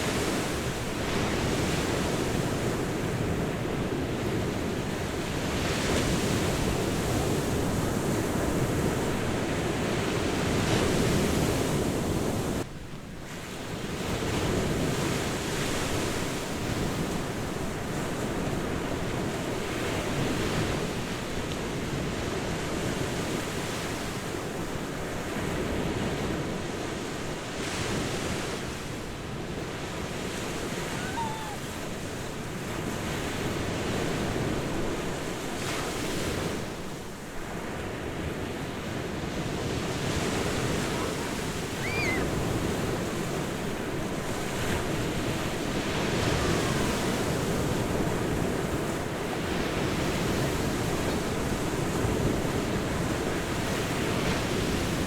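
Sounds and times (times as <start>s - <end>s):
waves breaking on beach: 0.0s - 55.0s
wind on microphone: 27.5s - 55.0s.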